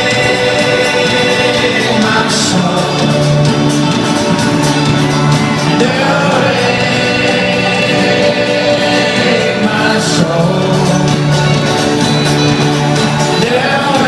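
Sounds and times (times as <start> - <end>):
live band playing: 0.0 - 14.0
voices singing held notes: 0.0 - 14.0.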